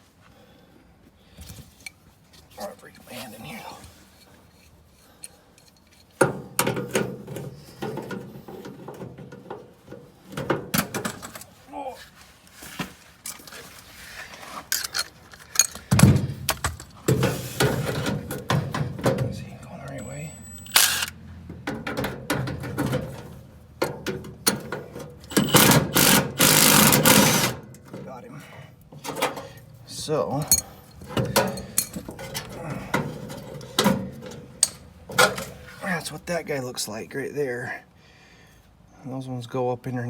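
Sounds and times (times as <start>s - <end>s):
hand tool clicking and scraping metal: 4.0s - 9.0s, 14.5s - 18.8s, 19.9s - 23.2s, 23.8s - 28.0s, 30.3s - 35.7s
power tool rattling: 20.6s - 23.2s, 23.8s - 27.8s.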